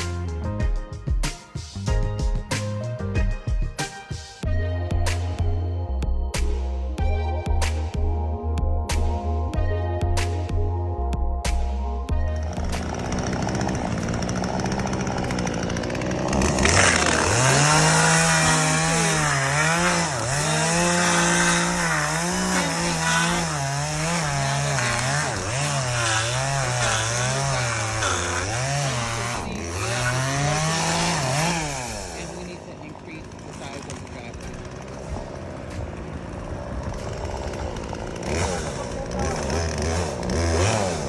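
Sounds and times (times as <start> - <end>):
chainsaw cutting wood: 11.5 - 41.0.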